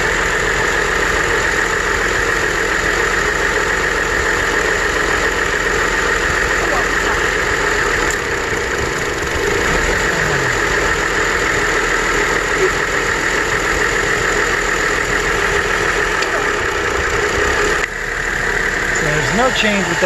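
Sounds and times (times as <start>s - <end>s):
misfiring engine idling: 0.0s - 20.0s.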